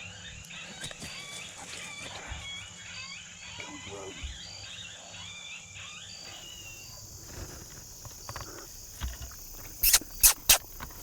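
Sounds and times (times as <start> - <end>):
high-pitched insect buzzing: 8.7 - 10.8
short chirps: 9.8 - 10.7.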